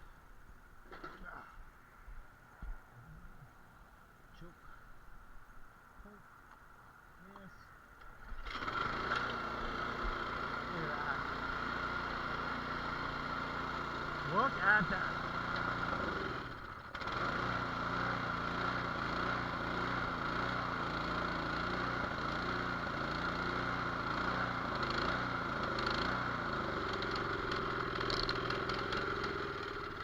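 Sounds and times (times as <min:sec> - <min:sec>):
snowblower engine surging: 0:08.2 - 0:30.0.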